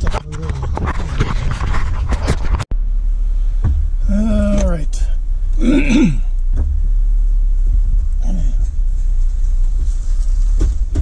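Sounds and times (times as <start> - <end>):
car low rumble: 0.0 - 11.0
person speaking: 4.0 - 6.2.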